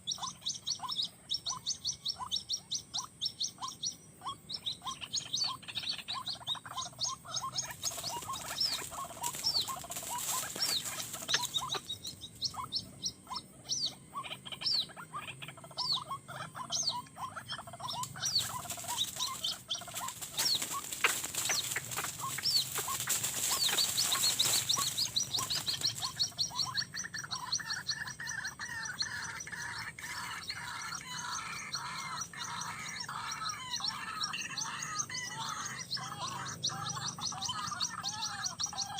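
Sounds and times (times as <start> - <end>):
waterhen calling: 4.9 - 38.9
rustling noise: 7.8 - 11.5, 18.4 - 26.1.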